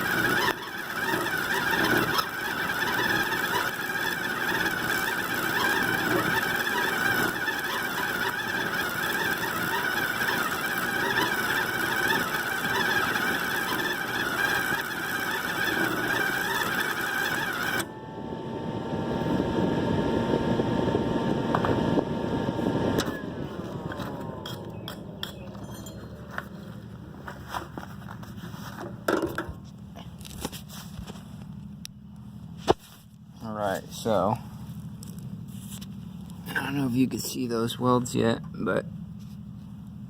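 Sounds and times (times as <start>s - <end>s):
welding arc crackling: 0.0s - 17.9s.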